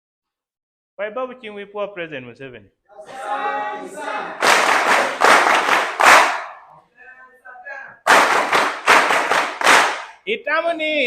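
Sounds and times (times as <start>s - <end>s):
crowd applauding: 4.0s - 6.6s, 8.1s - 10.1s.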